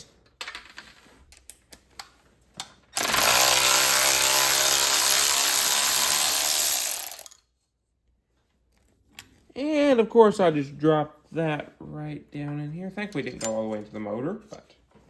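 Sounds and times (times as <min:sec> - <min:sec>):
electric ratchet motor running: 0:03.0 - 0:07.4.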